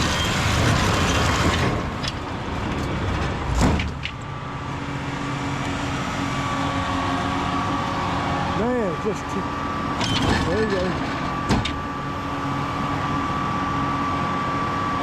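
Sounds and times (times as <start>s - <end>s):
tractor engine under load: 0.0s - 4.6s
noisy churning of ground: 0.0s - 15.0s.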